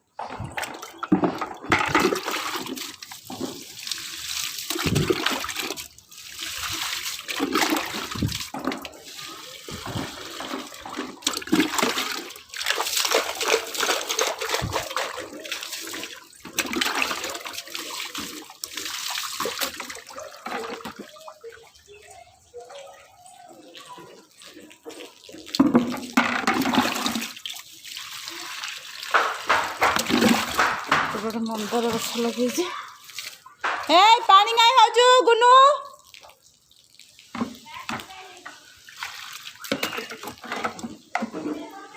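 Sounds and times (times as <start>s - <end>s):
water pouring into soil: 0.2s - 35.0s, 35.9s - 41.1s.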